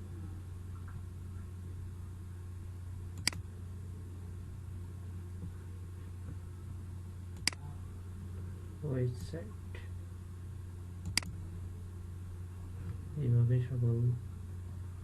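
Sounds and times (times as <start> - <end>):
low electrical hum: 0.0 - 15.0
computer mouse clicks: 3.2 - 3.4, 7.4 - 7.6, 11.0 - 11.3.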